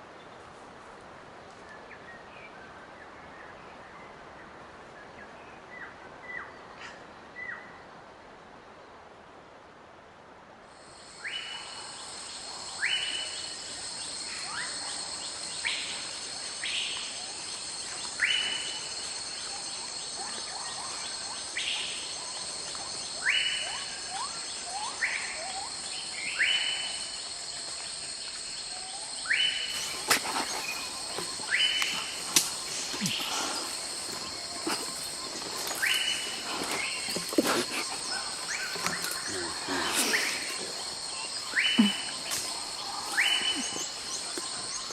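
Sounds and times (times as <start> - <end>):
insect chorus: 10.7 - 44.9
hiss with crackles: 29.2 - 44.9
rising animal calls: 29.7 - 44.7.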